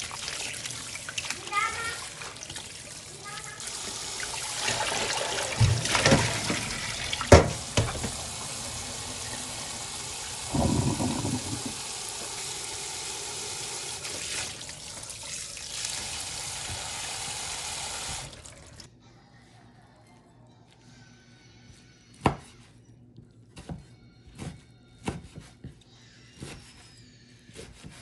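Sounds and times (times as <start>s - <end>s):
water running from tap into sink: 0.0s - 18.9s
water splashing: 10.5s - 11.9s.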